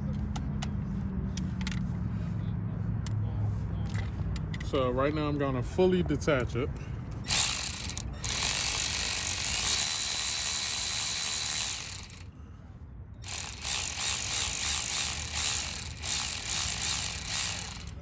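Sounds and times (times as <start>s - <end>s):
hand ratchet clicking: 7.3s - 12.3s, 13.2s - 18.0s.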